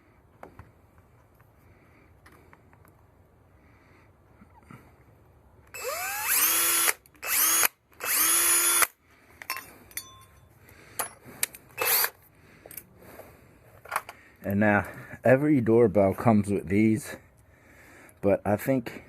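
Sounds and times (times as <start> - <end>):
power drill running: 5.7 - 9.0, 11.8 - 12.1.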